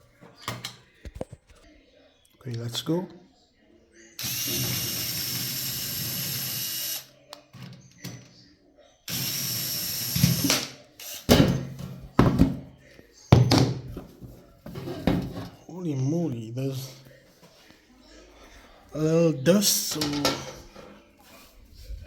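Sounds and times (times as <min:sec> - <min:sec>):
electric screwdriver motor: 0:04.2 - 0:07.1, 0:09.1 - 0:11.3.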